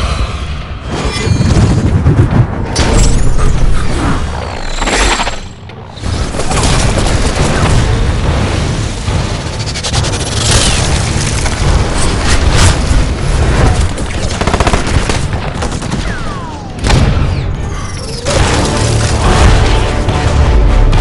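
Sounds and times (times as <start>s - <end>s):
action film music: 0.0s - 21.0s
rapid gunfire: 6.0s - 17.4s, 18.3s - 21.0s
booming blasts: 6.0s - 21.0s.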